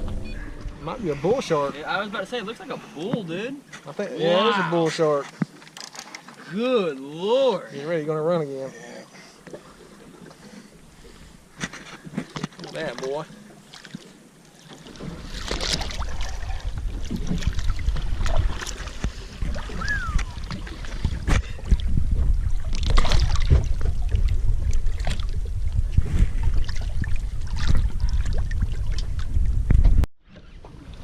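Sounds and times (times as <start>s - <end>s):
wind rumbling on microphone: 0.0s - 2.0s, 15.0s - 31.0s
short falling whistle: 19.8s - 20.4s.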